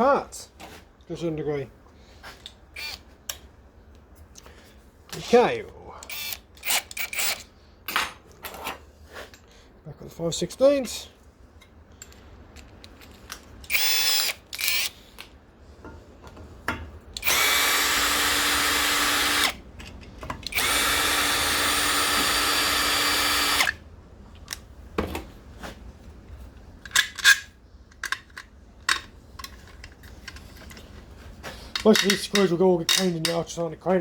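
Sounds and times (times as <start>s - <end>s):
power drill spinning: 2.8s - 3.0s, 6.1s - 7.4s, 13.7s - 15.1s, 17.2s - 19.6s, 20.4s - 23.8s.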